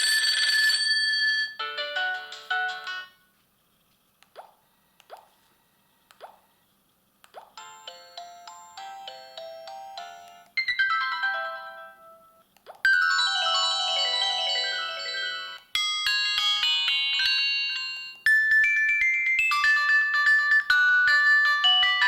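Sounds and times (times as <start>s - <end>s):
phone ringtone melodies: 0.0s - 3.2s, 7.6s - 22.0s.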